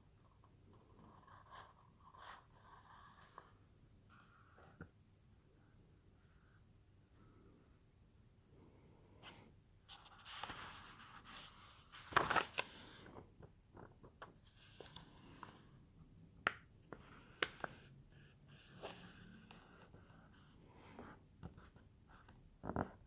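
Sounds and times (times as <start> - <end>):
rustling and scratching on paper: 0.7 - 4.9, 9.2 - 15.7, 16.9 - 23.0.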